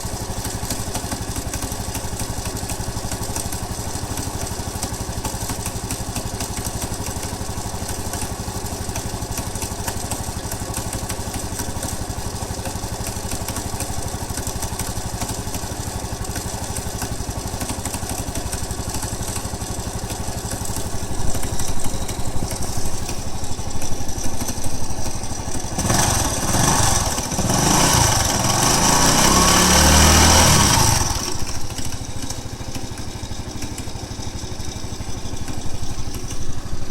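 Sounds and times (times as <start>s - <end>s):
abnormal engine noise: 0.0s - 36.9s
motorcycle engine idling: 0.0s - 36.9s
engine revving: 20.7s - 32.4s.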